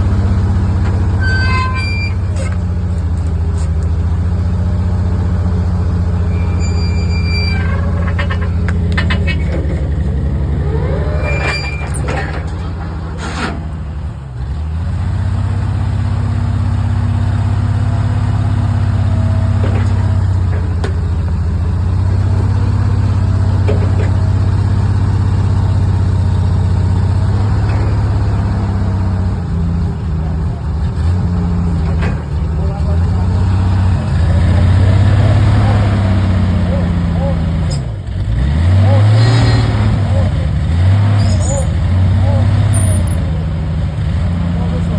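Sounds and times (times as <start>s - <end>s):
sawmill engine running: 0.0s - 44.9s
short squeals: 0.9s - 2.8s, 6.2s - 13.9s, 38.8s - 43.5s.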